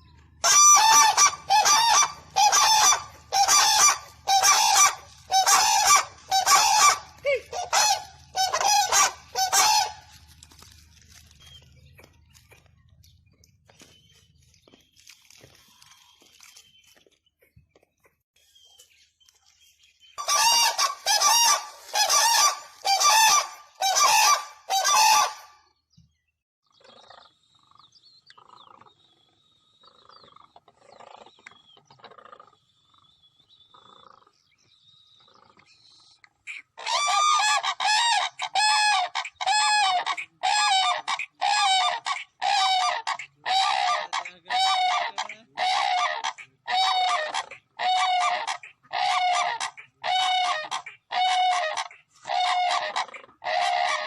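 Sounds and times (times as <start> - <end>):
cranes honking calls: 0.4 - 10.0.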